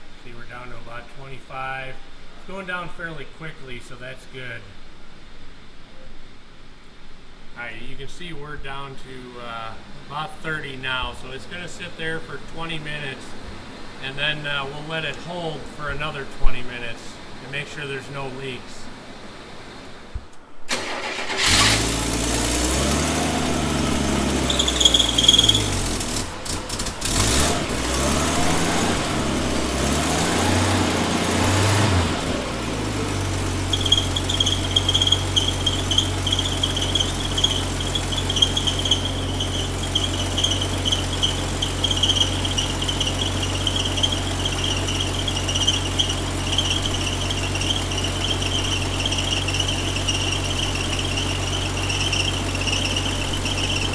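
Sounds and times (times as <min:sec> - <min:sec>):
car engine revving and idling: 0:20.7 - 0:53.9
high steady squeal: 0:20.7 - 0:53.9.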